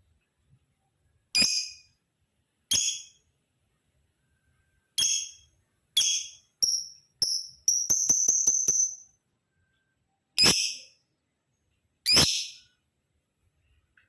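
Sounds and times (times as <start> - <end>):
lovebird shrill chirps: 1.4 - 2.0, 2.7 - 3.2, 5.0 - 9.0, 10.4 - 11.0, 12.0 - 12.7.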